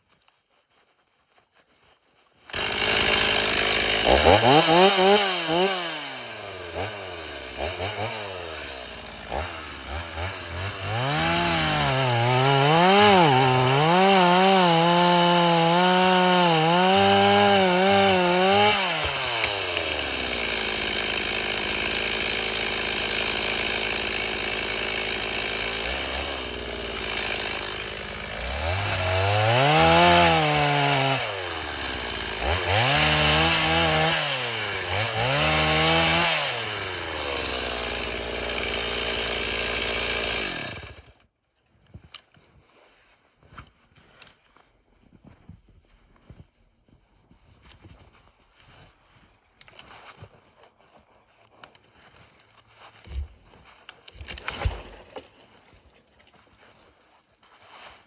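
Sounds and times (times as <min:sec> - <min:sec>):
chainsaw revving and idling: 0:02.5 - 0:41.2.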